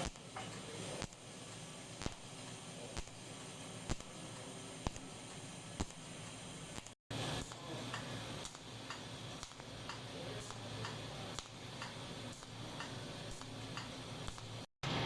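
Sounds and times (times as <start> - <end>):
welder arc ticking: 0.0 - 15.0.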